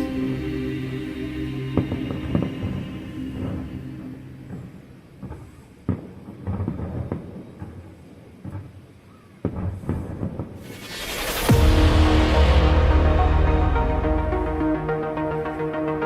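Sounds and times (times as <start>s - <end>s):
music: 0.0s - 5.2s, 10.6s - 16.0s
fireworks bangs and booms: 5.9s - 8.8s
loud hiss: 10.6s - 15.3s.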